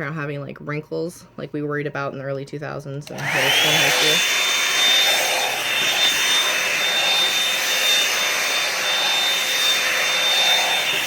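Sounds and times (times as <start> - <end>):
hair dryer running: 3.0 - 11.0.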